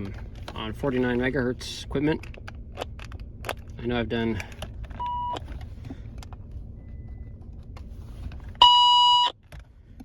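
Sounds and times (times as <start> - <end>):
faint low rumble: 0.0 - 10.0
walkie-talkie beep: 8.6 - 9.3.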